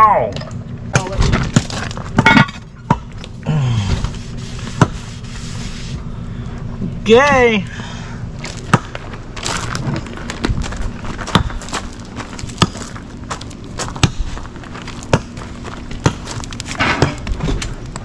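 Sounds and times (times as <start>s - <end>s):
campfire crackling and popping: 8.4s - 18.0s.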